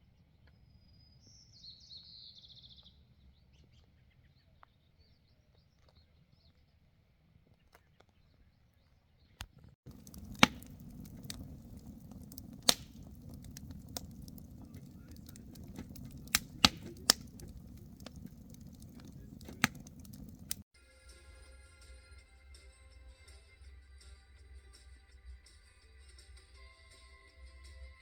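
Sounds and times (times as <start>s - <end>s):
campfire rumble: 9.9s - 20.6s
fire pops and cracks: 9.9s - 20.6s.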